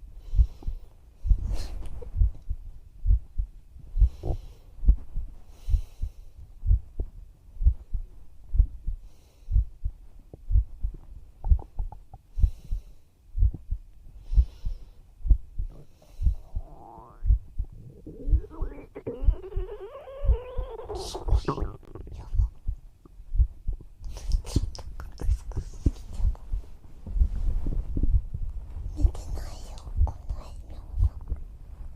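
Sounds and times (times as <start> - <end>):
heartbeat thumps: 0.0 - 31.9.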